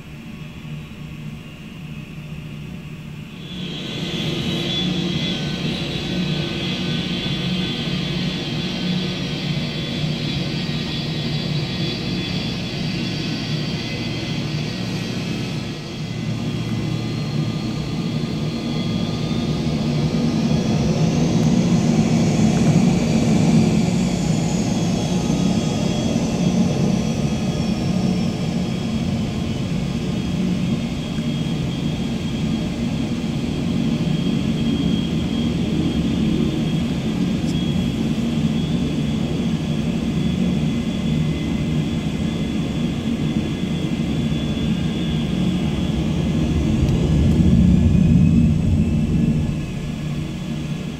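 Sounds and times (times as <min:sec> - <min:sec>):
high turbine whine: 0:00.0 - 0:50.9
jet engines rumbling: 0:00.0 - 0:50.9.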